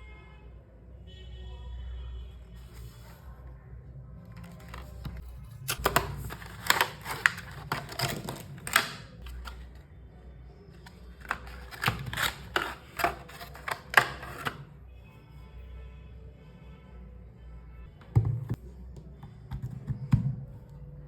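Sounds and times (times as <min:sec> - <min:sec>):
packaging rustling: 0:04.4 - 0:09.8, 0:10.8 - 0:14.6.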